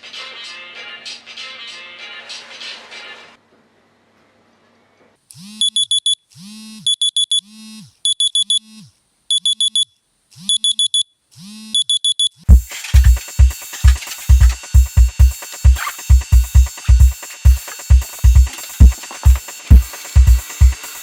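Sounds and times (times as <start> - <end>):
electronic alarm beeping: 5.6 - 6.2, 6.8 - 7.5, 8.1 - 8.7, 9.3 - 11.1, 11.8 - 12.4.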